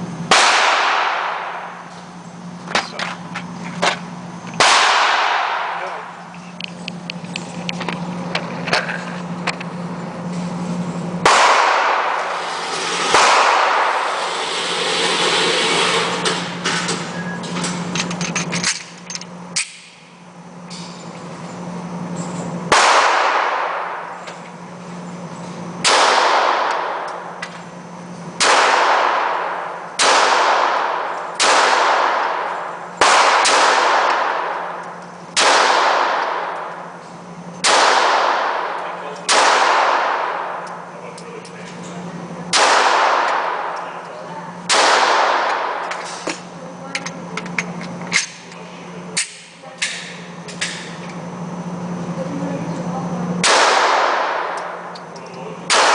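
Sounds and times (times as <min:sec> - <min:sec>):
steady low hum: 0:00.0 - 0:55.9
gunshots echoing indoors: 0:00.3 - 0:01.8, 0:04.6 - 0:06.1, 0:11.2 - 0:14.7, 0:22.7 - 0:24.2, 0:25.8 - 0:27.2, 0:28.4 - 0:36.8, 0:37.6 - 0:40.8, 0:42.5 - 0:44.0, 0:44.6 - 0:46.0, 0:53.4 - 0:54.9, 0:55.6 - 0:55.9.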